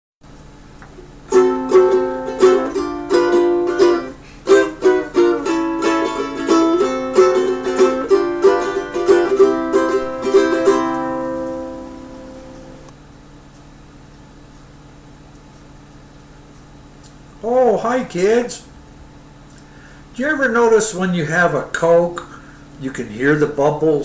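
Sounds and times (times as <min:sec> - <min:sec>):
ukulele strumming chords: 0:01.0 - 0:12.9.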